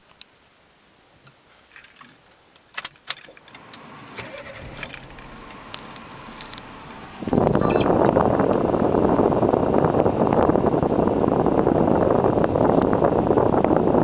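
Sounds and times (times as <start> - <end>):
car engine humming: 3.5 - 14.0
keys jingling: 4.3 - 8.0.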